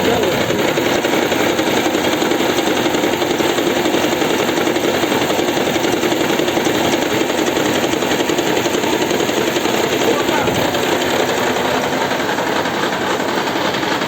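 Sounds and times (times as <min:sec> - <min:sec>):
car engine rattling: 0:00.0 - 0:14.0.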